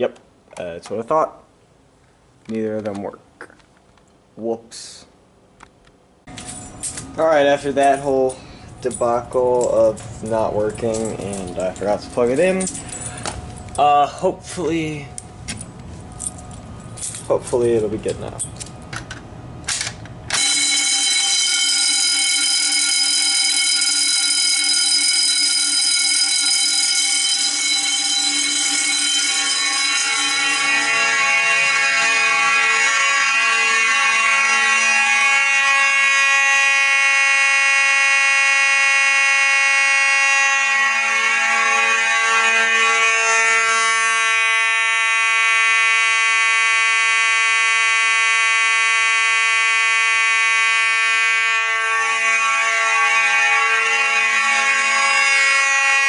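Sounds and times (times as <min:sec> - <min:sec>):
fire alarm sounding: 0:06.3 - 0:15.3, 0:20.3 - 0:56.0.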